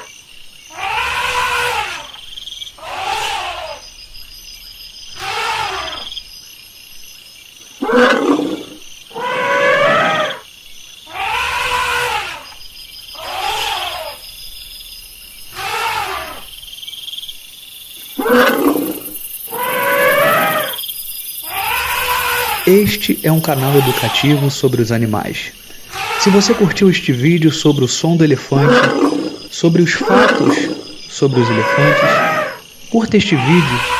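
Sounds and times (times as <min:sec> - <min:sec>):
elephant calling: 0:00.7 - 0:03.8, 0:05.2 - 0:06.1, 0:07.8 - 0:10.4, 0:11.1 - 0:14.3, 0:15.4 - 0:16.5, 0:18.0 - 0:33.9.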